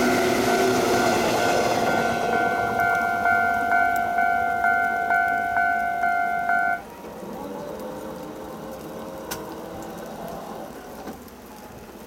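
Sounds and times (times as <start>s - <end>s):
level crossing warning bell: 0.0s - 6.9s.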